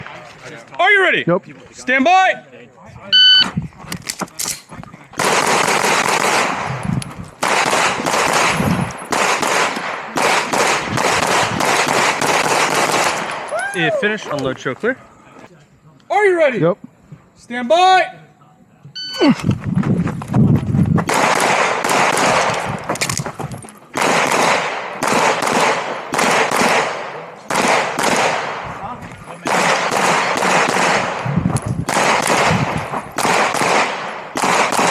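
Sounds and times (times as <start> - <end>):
pistol shots: 5.2 - 6.8, 7.4 - 13.5, 21.1 - 23.2, 23.9 - 28.8, 29.4 - 34.9.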